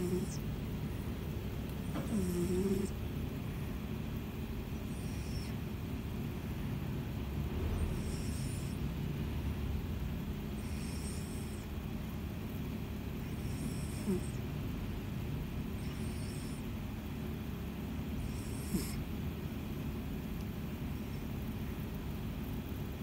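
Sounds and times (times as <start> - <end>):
cat snoring: 0.0 - 0.5, 1.8 - 3.0, 4.8 - 5.6, 7.4 - 8.9, 10.5 - 11.7, 13.2 - 14.4, 15.6 - 16.7, 18.1 - 19.1.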